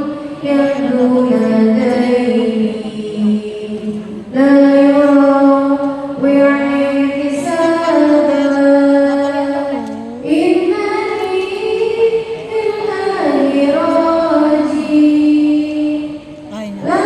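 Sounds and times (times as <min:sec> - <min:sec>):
woman singing long notes: 0:00.0 - 0:17.0.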